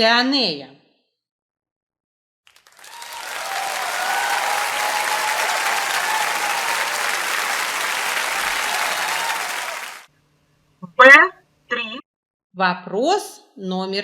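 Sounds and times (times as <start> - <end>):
crowd applause: 2.5 - 10.1.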